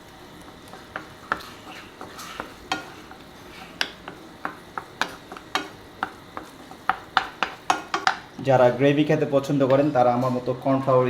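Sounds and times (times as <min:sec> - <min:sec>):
spatula scraping a frying pan: 0:00.0 - 0:08.3
meat sizzling: 0:00.0 - 0:09.0.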